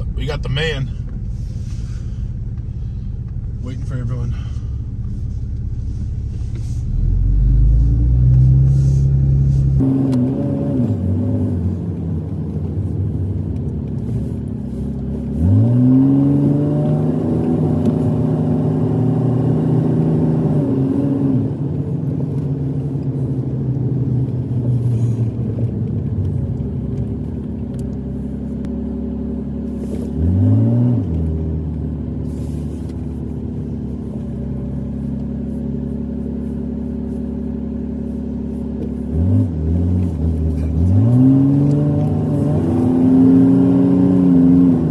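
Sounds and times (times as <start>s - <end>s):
truck engine accelerating: 0.0s - 28.6s, 29.7s - 44.9s.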